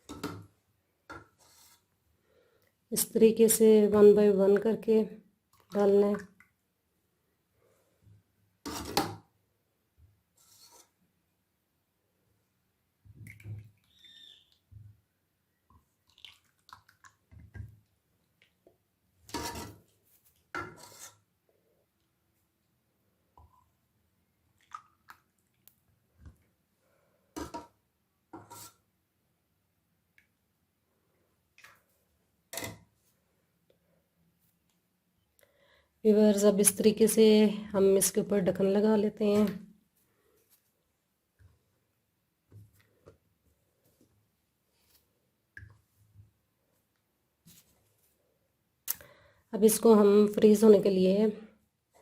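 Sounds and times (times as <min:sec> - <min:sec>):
utensils scraping and knocking: 0:19.3 - 0:19.9, 0:20.6 - 0:21.2, 0:28.4 - 0:28.8.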